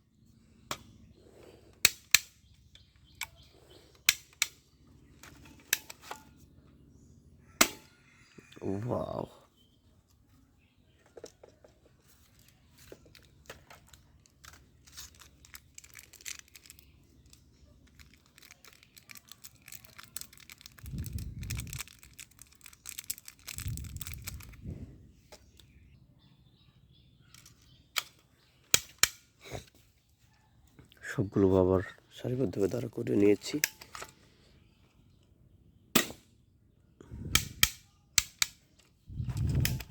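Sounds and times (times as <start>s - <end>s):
crinkling and rustling: 10.1s - 25.8s
sharp loud clicks: 35.9s - 36.3s.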